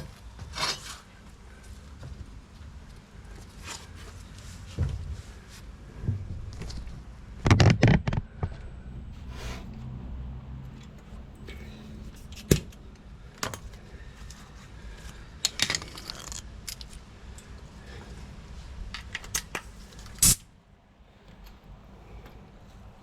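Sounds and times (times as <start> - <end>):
clattering rattle: 15.4 - 17.0.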